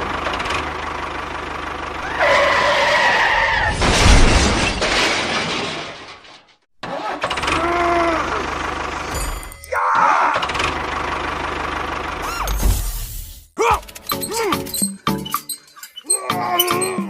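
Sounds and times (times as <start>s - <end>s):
engine running: 0.0s - 3.1s, 7.2s - 9.5s, 10.4s - 12.5s.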